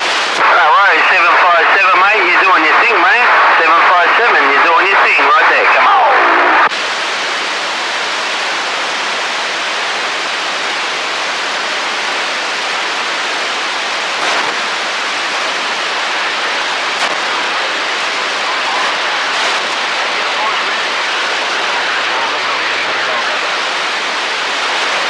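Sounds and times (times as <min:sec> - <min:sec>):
faint radio crackles: 0:00.0 - 0:06.8, 0:13.7 - 0:25.0
radio transmission: 0:00.0 - 0:07.0, 0:11.2 - 0:25.0
radio static: 0:00.0 - 0:07.6, 0:11.2 - 0:25.0.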